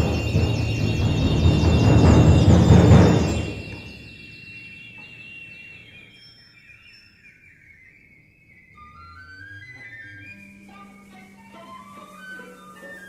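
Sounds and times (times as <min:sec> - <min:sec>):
chamber ensemble playing: 0:00.0 - 0:06.0, 0:08.9 - 0:13.0.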